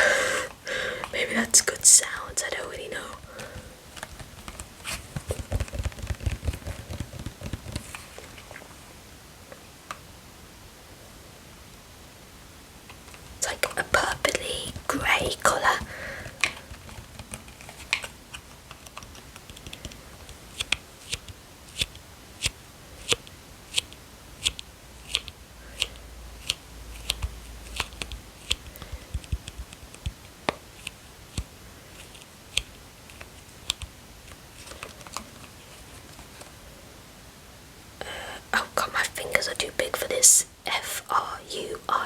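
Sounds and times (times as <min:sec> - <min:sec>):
fingertips tapping plastic bottle: 0:03.1 - 0:08.2.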